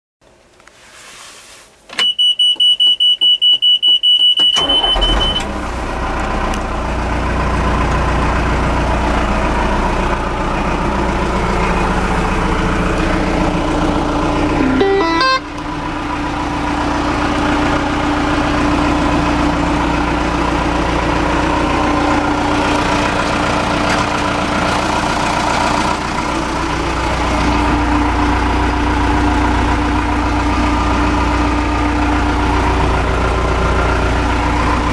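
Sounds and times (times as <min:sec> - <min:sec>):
diesel engine starting and idling: 0:02.0 - 0:34.9
warning buzzer beeping rapidly: 0:14.6 - 0:15.5.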